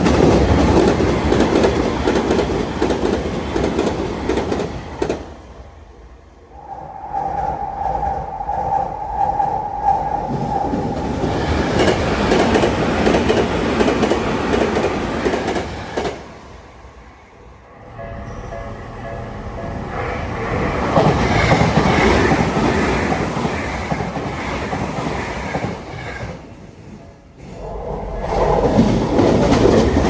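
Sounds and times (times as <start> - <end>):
train wheels clattering on rails: 0.0 - 5.4, 10.3 - 16.4, 20.5 - 27.6, 28.3 - 30.0
faint train rumble: 0.0 - 30.0
train rushing past: 0.0 - 30.0.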